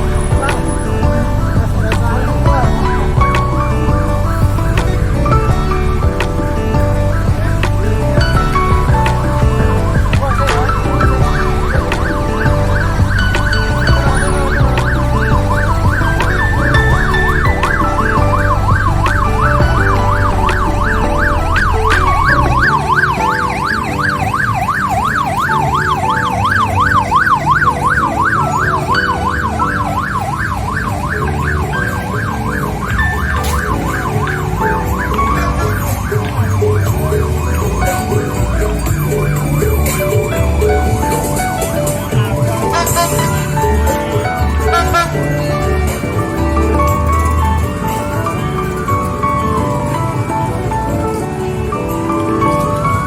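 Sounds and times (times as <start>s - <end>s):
music with pulsing bass: 0.0s - 53.0s
fast warbling siren-like wail: 10.0s - 41.3s.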